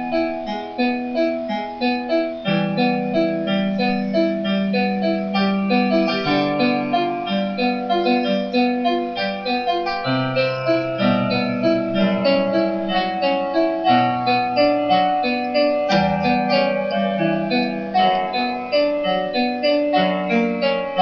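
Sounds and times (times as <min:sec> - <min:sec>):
electronic keyboard piano piece: 0:00.0 - 0:21.0.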